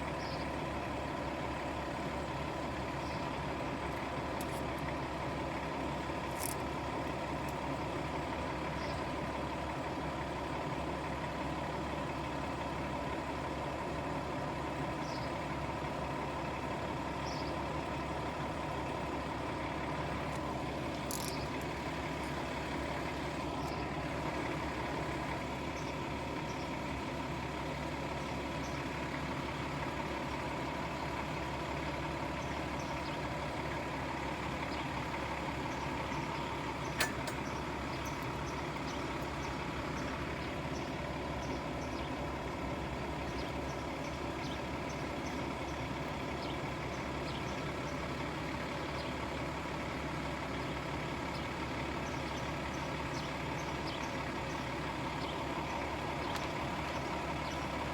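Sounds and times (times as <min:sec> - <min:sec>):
steady mechanical drone: 0:00.0 - 0:57.9
sharp click: 0:36.9 - 0:37.5.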